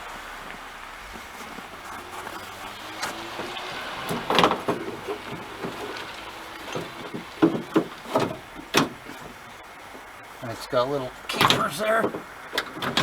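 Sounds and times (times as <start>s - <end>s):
knocks of parts being handled: 3.0s - 10.1s.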